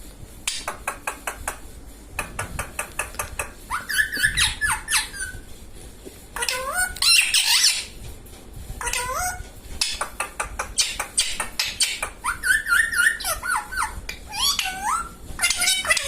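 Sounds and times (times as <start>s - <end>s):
beak clicking on bread: 2.2s - 5.0s, 9.8s - 13.2s
parrot squeaky calls: 3.0s - 5.4s, 6.4s - 8.0s, 8.8s - 10.0s, 10.7s - 16.0s.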